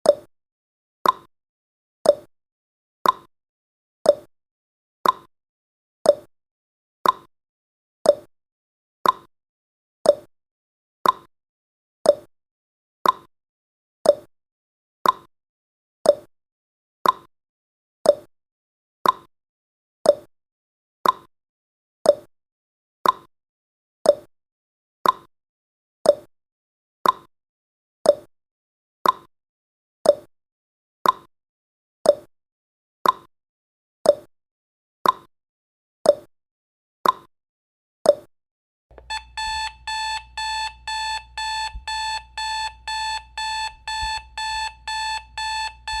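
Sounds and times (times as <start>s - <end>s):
clock ticking: 38.9s - 46.0s
pulsing alarm clock beeps: 39.0s - 46.0s.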